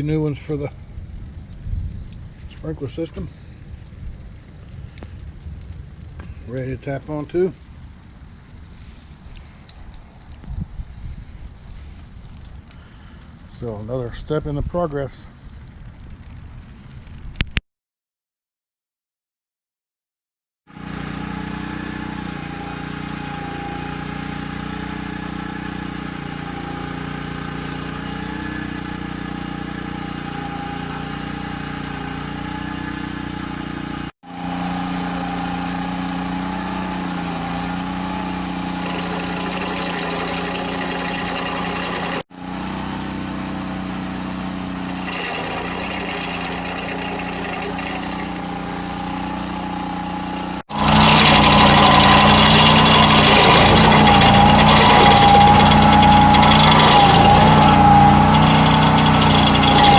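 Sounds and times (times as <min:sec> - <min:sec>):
engine idling: 0:50.7 - 0:59.9.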